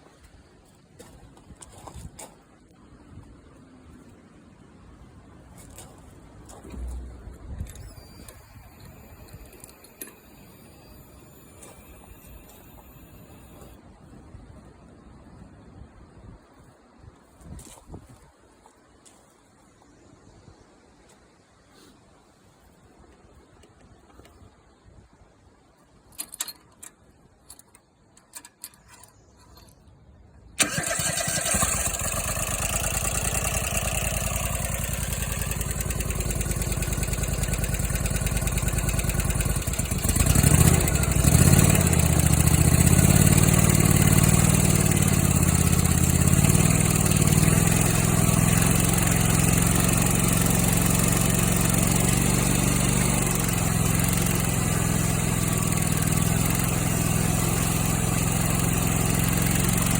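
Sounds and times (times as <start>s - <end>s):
engine idling: 30.6s - 59.9s
starter motor cranking engine: 30.6s - 59.9s.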